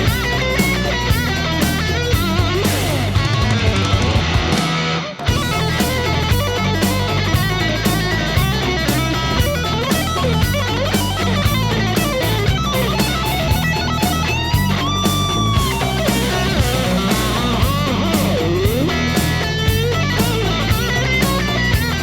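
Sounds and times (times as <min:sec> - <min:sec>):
rock music with electric guitar: 0:00.0 - 0:22.0.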